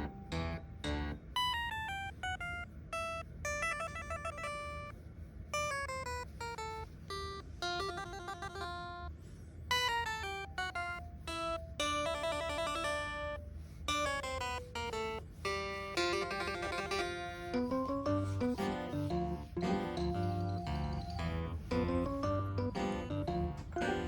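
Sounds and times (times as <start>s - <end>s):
low musical accompaniment: 0.0s - 24.0s
plucked bell-like melody: 16.0s - 24.0s.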